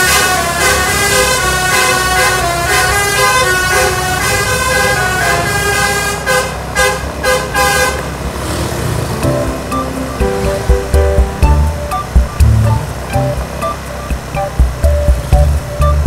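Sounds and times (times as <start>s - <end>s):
multi-tone bus horn: 0.0s - 8.2s.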